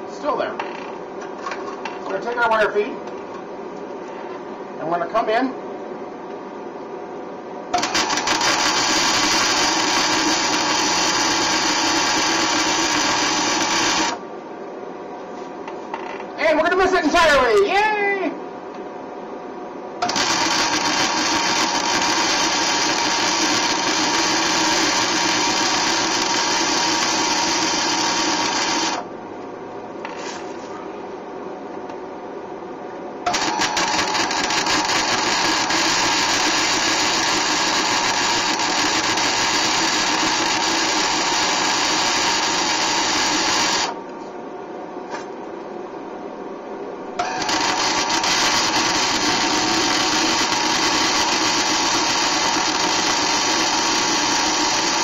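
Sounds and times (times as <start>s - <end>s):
welder arc crackling: 20.0s - 29.0s, 47.2s - 55.0s
welder humming: 20.0s - 29.1s, 33.3s - 44.0s, 47.2s - 55.0s.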